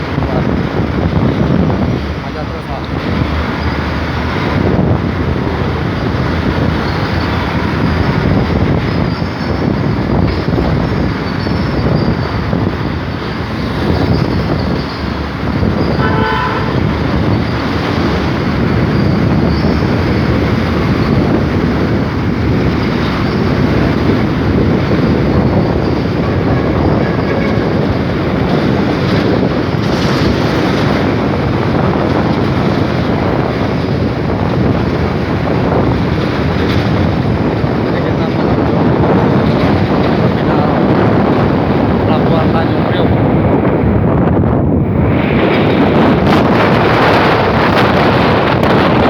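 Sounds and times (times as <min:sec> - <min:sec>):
vehicle engine and road noise: 0:00.0 - 0:49.0.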